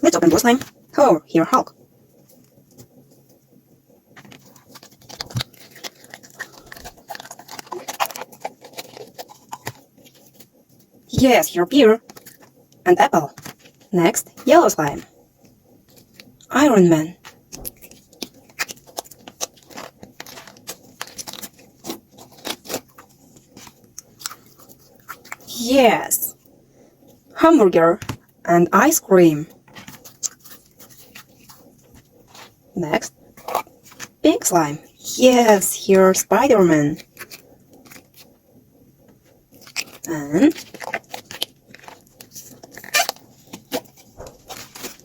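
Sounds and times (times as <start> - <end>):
fingers squeezing sticky slime: 4.2 - 10.4, 17.3 - 25.5, 39.6 - 45.0.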